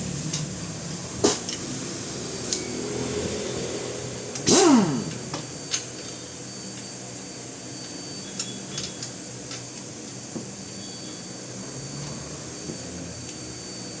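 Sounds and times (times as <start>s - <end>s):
whir falling in pitch: 1.8s - 5.7s.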